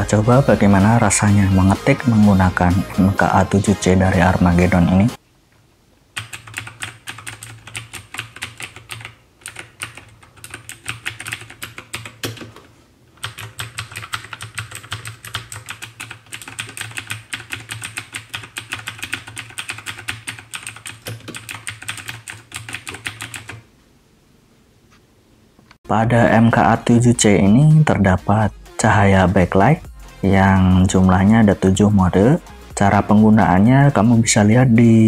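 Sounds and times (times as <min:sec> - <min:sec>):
clicky mechanical keyboard typing: 0:06.2 - 0:23.6.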